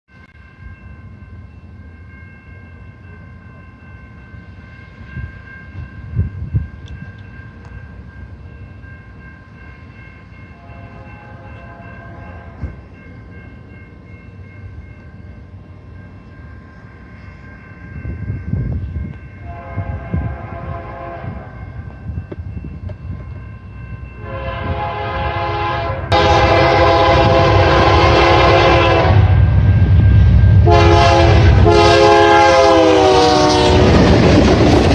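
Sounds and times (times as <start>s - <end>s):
train air horn blasts: 10.5s - 12.8s, 19.4s - 21.6s, 24.2s - 29.5s, 30.6s - 34.1s
locomotive rumble: 18.0s - 34.9s.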